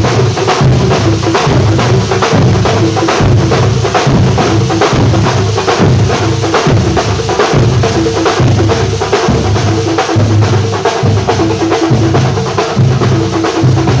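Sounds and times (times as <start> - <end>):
fast drum beat: 0.0 - 14.0.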